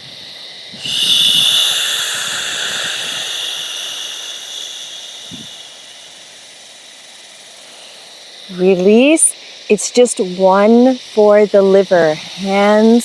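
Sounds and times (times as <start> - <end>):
person breathing out shhh: 0.8 - 8.1.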